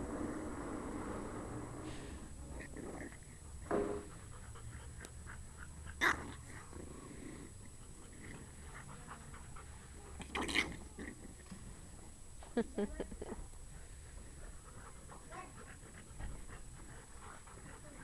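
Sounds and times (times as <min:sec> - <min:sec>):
puppies playing and making noises: 0:00.0 - 0:18.0.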